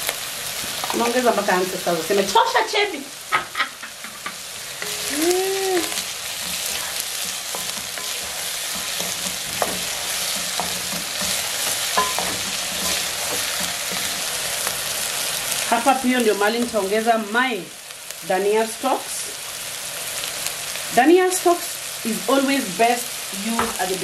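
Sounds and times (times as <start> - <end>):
onions sizzling in oil: 0.0 - 24.0.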